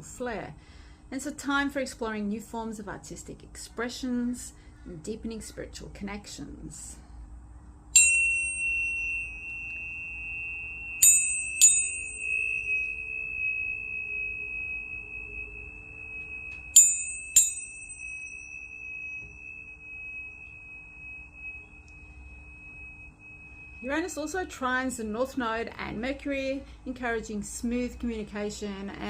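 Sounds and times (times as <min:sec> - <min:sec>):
tuning fork strikes: 0:07.9 - 0:25.7
high-pitched tuning fork ring: 0:07.9 - 0:29.0.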